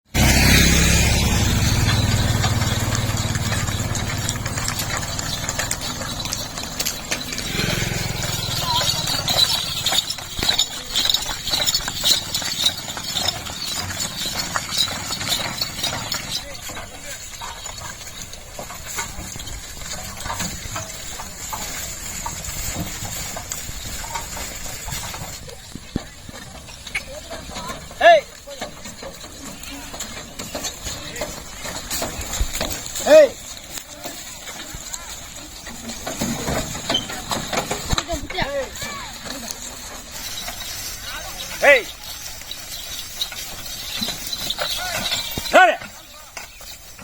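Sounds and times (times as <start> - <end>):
cart knocking and clattering: 0.0 - 47.0
engine idling: 0.1 - 17.2.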